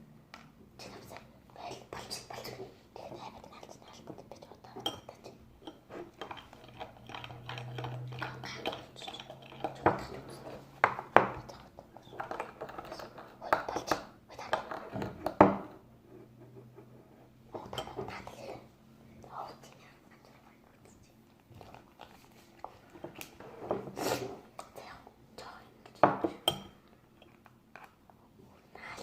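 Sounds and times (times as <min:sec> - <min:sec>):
utensil clinking against bowl: 0:26.0 - 0:27.4.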